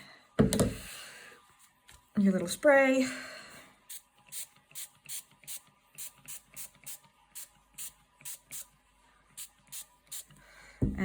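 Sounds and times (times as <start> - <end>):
spray bottle hissing sprays: 3.9 - 8.7.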